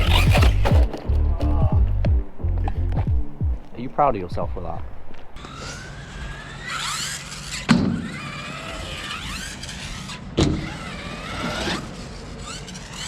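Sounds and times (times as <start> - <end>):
rc truck electric motor whining: 0.0 - 0.8, 5.4 - 13.0
truck hitting ground thumps: 0.0 - 1.6, 7.5 - 9.7, 10.3 - 11.0.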